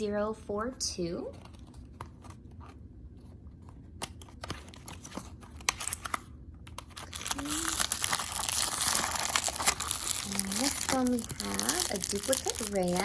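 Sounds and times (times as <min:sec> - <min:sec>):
plastic packaging crinkling: 0:04.3 - 0:13.0.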